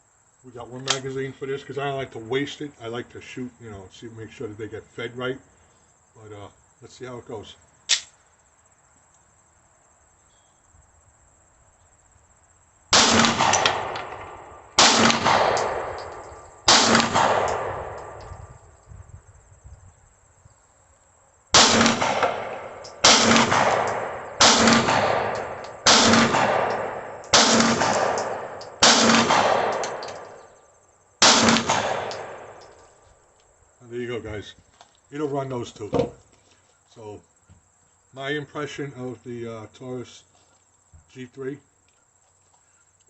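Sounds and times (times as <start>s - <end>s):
pistol shots with echo: 12.9s - 18.3s, 21.5s - 30.5s, 31.2s - 32.8s.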